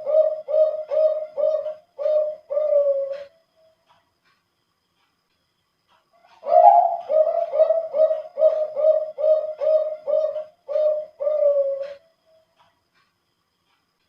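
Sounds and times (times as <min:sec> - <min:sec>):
dove cooing: 0:00.0 - 0:03.4, 0:06.3 - 0:12.1.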